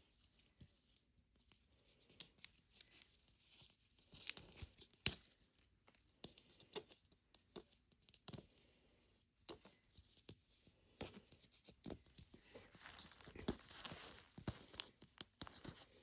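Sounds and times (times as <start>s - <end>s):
plastic packaging crinkling: 12.6s - 14.7s.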